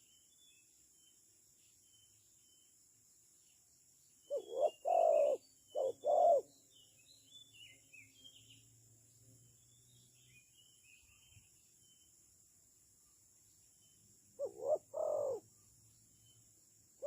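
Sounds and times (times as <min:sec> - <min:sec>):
small birds chirping: 0:00.0 - 0:17.0
dove cooing: 0:04.3 - 0:06.5, 0:14.4 - 0:15.4.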